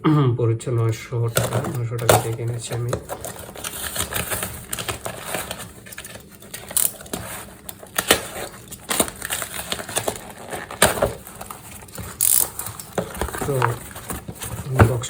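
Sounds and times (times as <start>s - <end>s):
packaging torn open and rustling: 1.3s - 15.0s.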